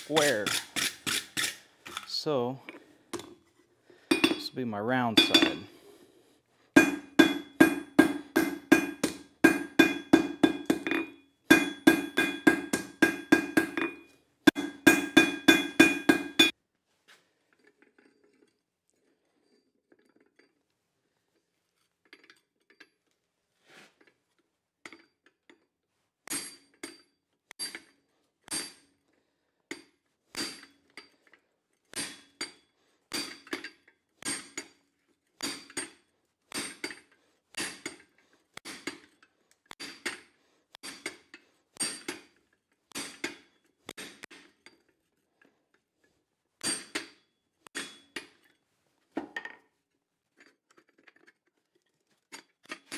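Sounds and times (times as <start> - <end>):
anvil ringing: 5.2 - 5.7, 6.8 - 16.5
hammer striking steel on anvil: 5.2 - 5.7, 6.8 - 16.5.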